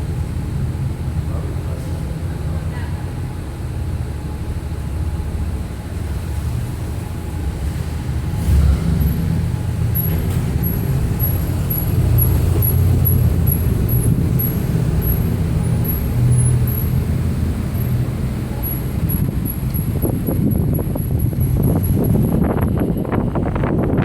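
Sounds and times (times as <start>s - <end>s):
low rumble of car rolling: 0.0s - 24.0s
squeaking car wheel: 10.0s - 17.1s.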